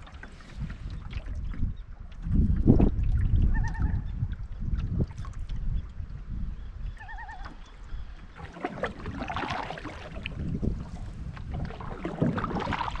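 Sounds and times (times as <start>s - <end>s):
paddle splashing in water: 0.0s - 6.2s, 7.1s - 13.0s
wind rumbling on microphone: 0.0s - 13.0s.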